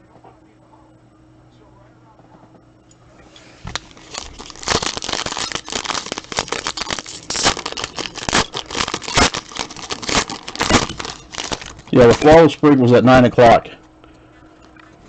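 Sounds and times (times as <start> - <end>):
plastic wrapping crinkling: 3.6 - 13.6.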